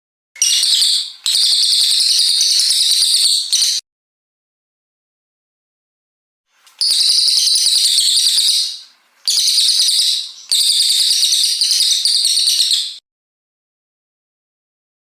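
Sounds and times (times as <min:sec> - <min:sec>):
songbird high-pitched trilling: 0:00.4 - 0:03.8, 0:06.8 - 0:13.0.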